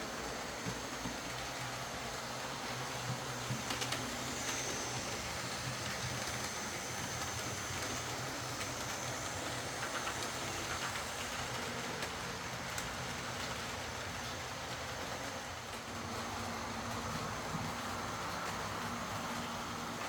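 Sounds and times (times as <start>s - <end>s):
faint high whine: 0.0s - 11.6s
model train motor hum: 0.0s - 20.0s.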